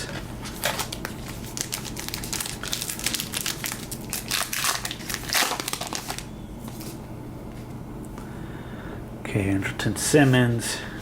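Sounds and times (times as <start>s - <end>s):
foil wrapper crinkling: 0.4s - 7.0s.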